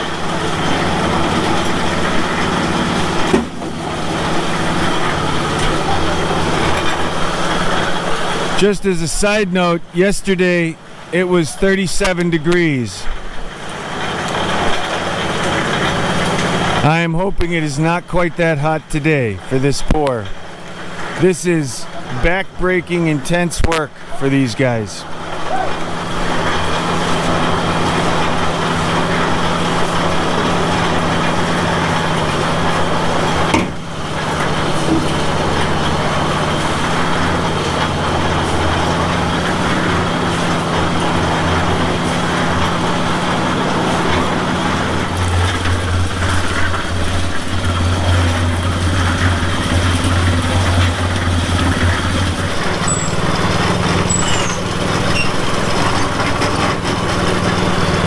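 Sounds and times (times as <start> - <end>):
small engine running: 0.0 - 10.0, 13.2 - 17.1, 25.0 - 58.0.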